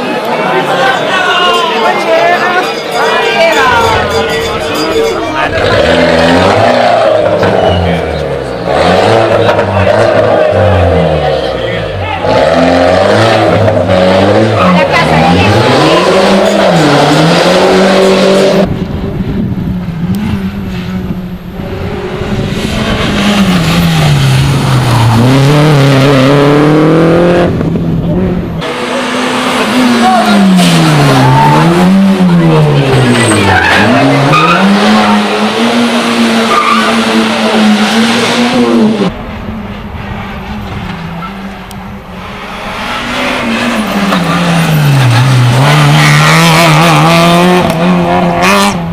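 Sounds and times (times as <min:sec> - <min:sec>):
rally car engines at full throttle: 0:00.0 - 0:48.9
tyres squealing: 0:01.5 - 0:08.3.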